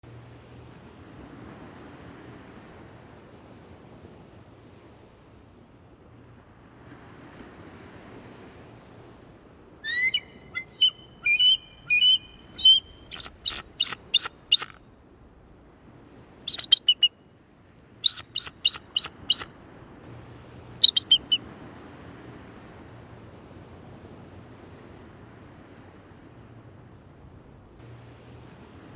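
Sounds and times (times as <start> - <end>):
eagle high piping chirps: 9.8 - 14.8, 16.5 - 17.1, 18.0 - 19.5, 20.8 - 21.4.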